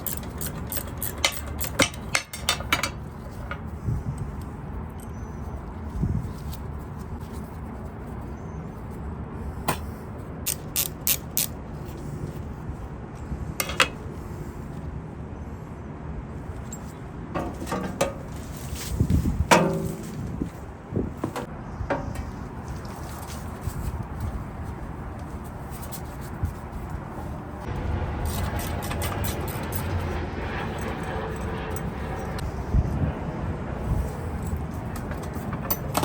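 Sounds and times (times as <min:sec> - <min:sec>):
low background rumble: 0:26.3 - 0:35.8.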